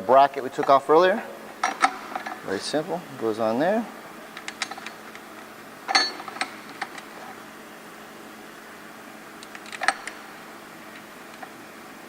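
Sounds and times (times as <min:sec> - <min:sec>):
metal bracket and bolts clicking: 0:01.6 - 0:02.4, 0:05.9 - 0:07.1.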